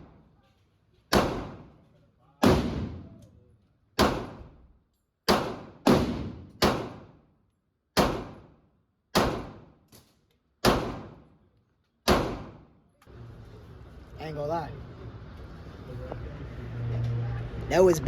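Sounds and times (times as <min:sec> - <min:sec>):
pistol shots: 0:01.1 - 0:01.8, 0:02.4 - 0:03.2, 0:04.0 - 0:04.6, 0:05.2 - 0:07.2, 0:08.0 - 0:09.9, 0:10.6 - 0:11.4, 0:12.0 - 0:12.8.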